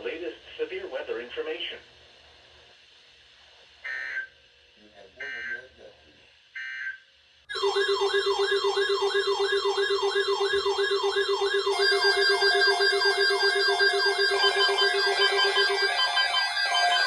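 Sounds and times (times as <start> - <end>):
electronic alarm tones: 3.9 - 4.3, 5.2 - 5.6, 6.6 - 17.0
pulsing electronic buzz: 6.5 - 17.0
downward sweeping siren tone: 7.5 - 17.0.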